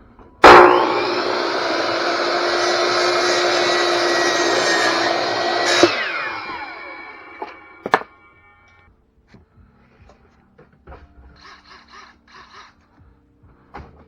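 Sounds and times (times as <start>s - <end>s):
power tool motor whining: 0.4s - 8.0s.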